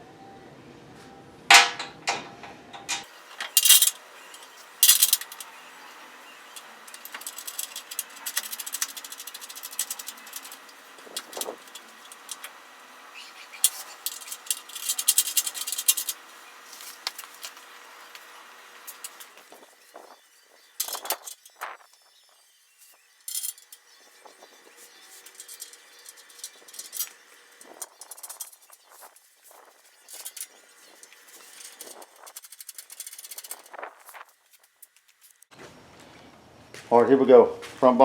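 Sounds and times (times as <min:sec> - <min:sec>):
sharp metal clanks: 0:01.5 - 0:12.5
metal tools and bolts clinking: 0:01.5 - 0:16.2, 0:18.9 - 0:19.5, 0:20.8 - 0:21.8, 0:23.2 - 0:23.8, 0:25.1 - 0:29.1
rapid clicking: 0:03.4 - 0:19.5.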